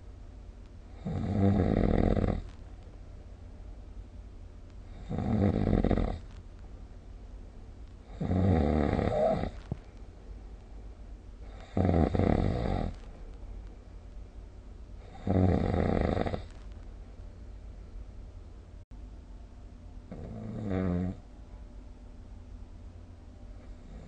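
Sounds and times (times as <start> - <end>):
person snoring: 1.0 - 2.5, 4.9 - 6.2, 8.1 - 9.6, 11.4 - 13.0, 15.0 - 16.5, 20.1 - 21.2
quiet breathing: 23.4 - 24.0.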